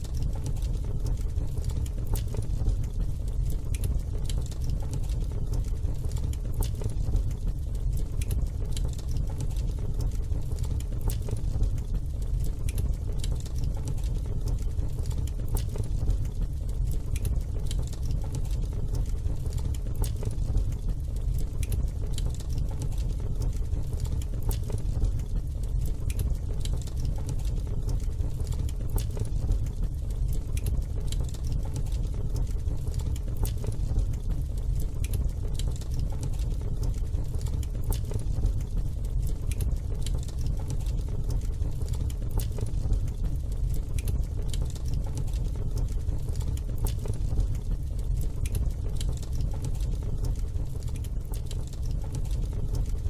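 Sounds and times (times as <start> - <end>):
fire crackling and popping: 0.0 - 53.0
low fire rumble: 0.0 - 53.0.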